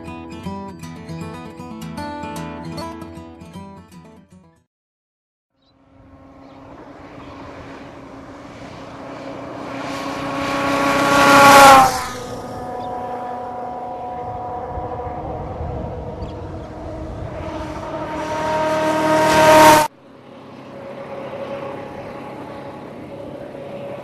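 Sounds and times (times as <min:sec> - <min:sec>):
motorcycle passing by: 0:05.6 - 0:24.0.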